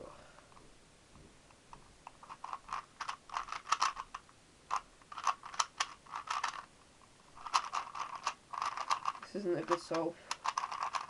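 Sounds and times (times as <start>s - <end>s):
speed cube plastic clicks: 1.7s - 6.7s, 7.4s - 11.0s.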